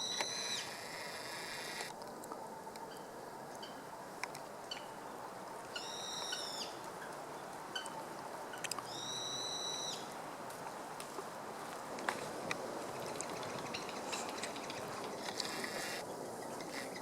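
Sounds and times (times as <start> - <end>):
woodpecker high-pitched calls: 0.0 - 1.9, 5.7 - 7.1, 7.7 - 10.1, 13.0 - 17.0.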